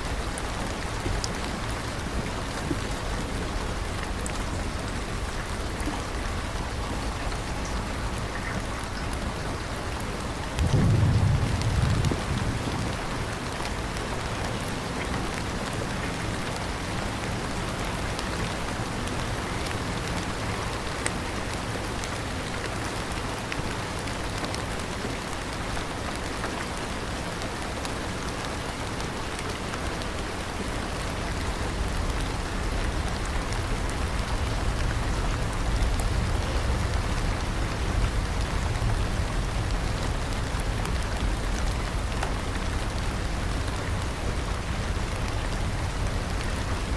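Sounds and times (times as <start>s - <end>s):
heavy rain falling: 0.0s - 46.9s
deep low rumble: 10.6s - 13.0s.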